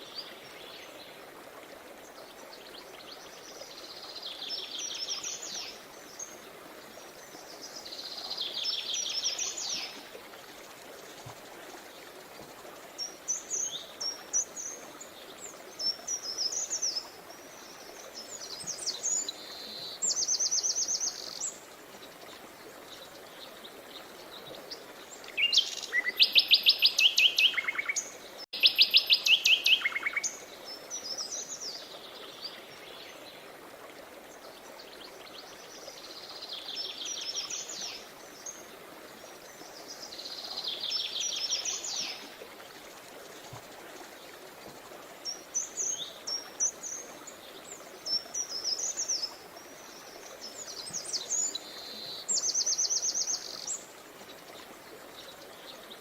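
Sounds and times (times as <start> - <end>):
songbirds singing: 13.0 - 33.5, 34.3 - 56.0.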